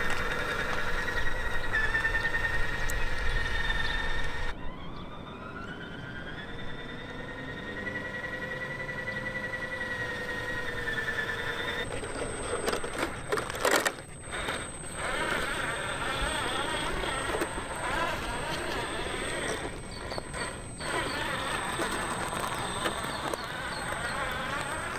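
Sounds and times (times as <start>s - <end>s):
tyres crunching over rough ground: 0.0s - 3.2s, 11.3s - 24.9s
electric motor whining: 0.0s - 4.8s, 5.4s - 24.9s.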